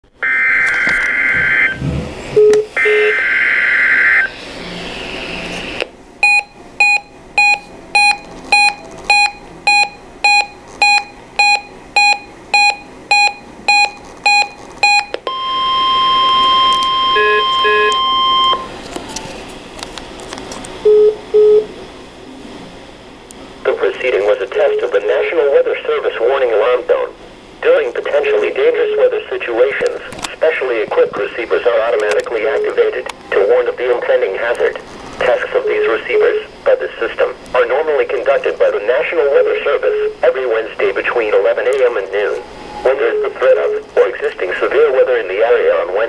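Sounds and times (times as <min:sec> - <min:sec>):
alarm beeps: 0:00.2 - 0:01.8, 0:02.4 - 0:04.3, 0:06.2 - 0:18.7, 0:20.9 - 0:21.7
steady warning alarm tone: 0:00.2 - 0:01.8, 0:02.4 - 0:04.3, 0:06.2 - 0:18.7.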